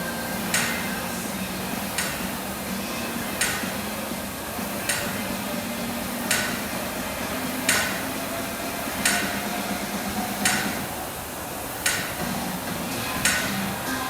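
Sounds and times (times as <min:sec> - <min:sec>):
equipment clacking: 0:04.6 - 0:05.4, 0:06.2 - 0:08.3, 0:08.9 - 0:11.0, 0:11.8 - 0:14.0.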